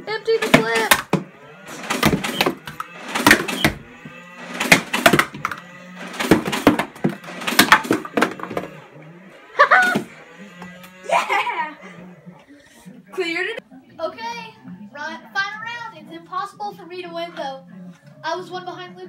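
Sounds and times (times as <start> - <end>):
toy blaster firing bursts: 0.4 - 8.7
darts clattering: 0.4 - 8.8
toy blaster flywheels humming: 0.4 - 12.2.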